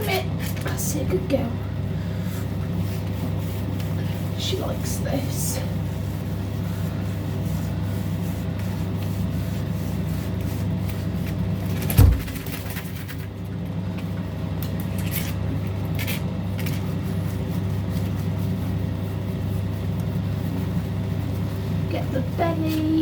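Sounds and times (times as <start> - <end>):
low motor hum: 0.0 - 23.0
loud thump: 11.9 - 12.4.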